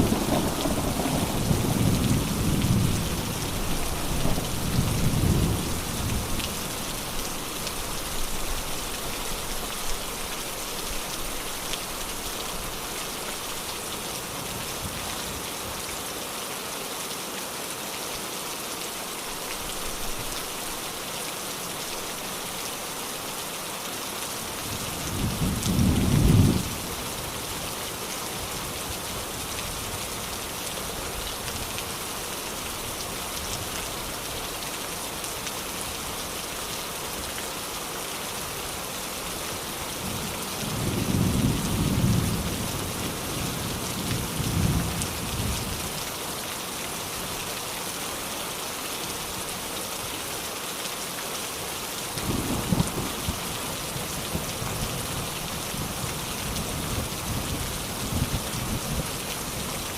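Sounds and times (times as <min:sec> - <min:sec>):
thunder rolling: 0:00.0 - 0:03.0
steady rain falling: 0:00.0 - 0:59.9.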